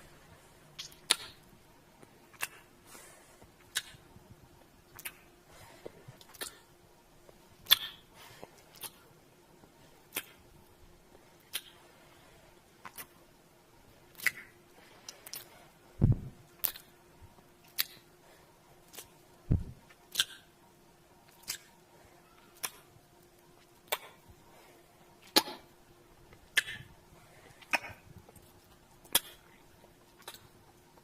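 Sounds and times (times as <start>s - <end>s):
wet kissing smacks: 3.7s - 4.0s, 7.7s - 8.0s, 20.1s - 20.4s, 21.4s - 21.7s.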